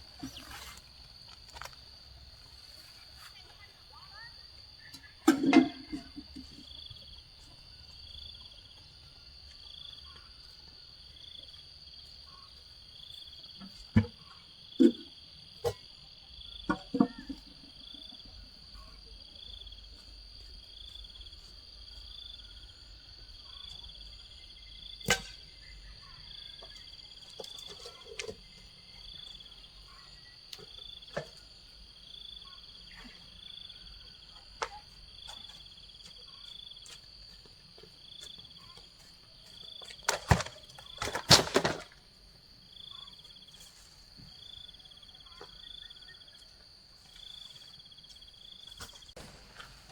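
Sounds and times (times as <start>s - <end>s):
insects chirping: 0.0s - 49.9s
knocks and clatter of objects: 5.0s - 6.7s, 13.6s - 15.9s, 16.6s - 18.4s, 39.5s - 42.1s.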